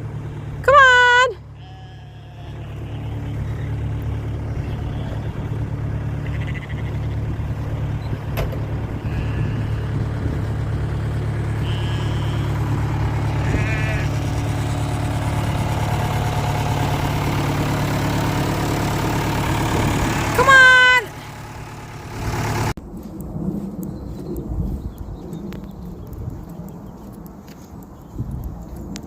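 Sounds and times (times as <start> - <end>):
vehicle engine running: 0.0 - 29.0
sheep bleating: 1.0 - 3.7, 4.5 - 7.2, 8.9 - 9.9, 11.5 - 12.6, 13.3 - 14.3.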